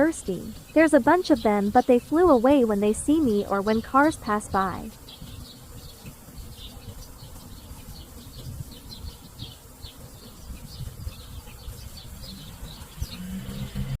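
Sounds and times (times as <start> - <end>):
hummingbirds chirping: 0.0 - 14.0
low hum: 0.0 - 14.0
wind rumble on microphone: 0.0 - 14.0.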